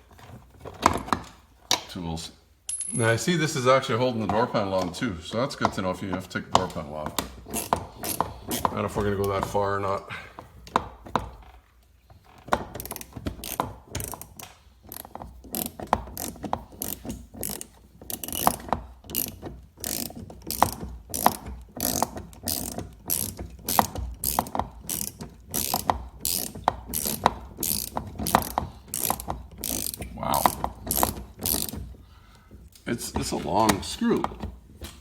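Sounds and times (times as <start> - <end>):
hand ratchet clicking: 6.5 - 9.5, 12.3 - 32.8.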